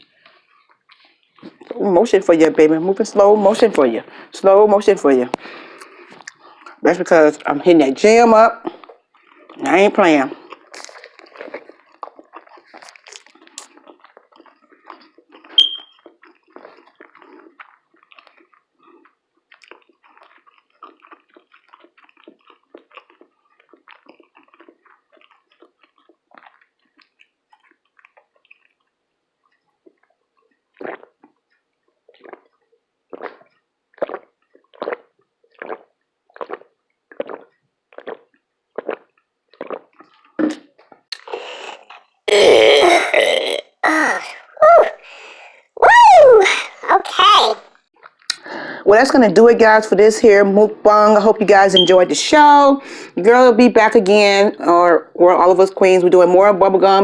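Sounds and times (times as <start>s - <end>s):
chewing and smacking: 0.0s - 1.8s, 5.4s - 7.5s, 8.6s - 42.2s, 47.9s - 48.5s
wet swallowing sounds: 0.0s - 1.9s, 5.3s - 6.8s, 8.6s - 43.8s, 47.9s - 48.7s.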